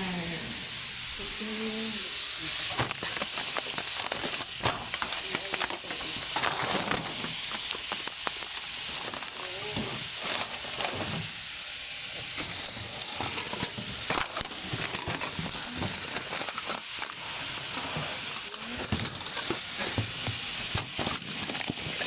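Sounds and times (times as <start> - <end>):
beef sizzling in a pan: 0.0 - 22.0
utensil clicking and scraping: 12.4 - 22.0.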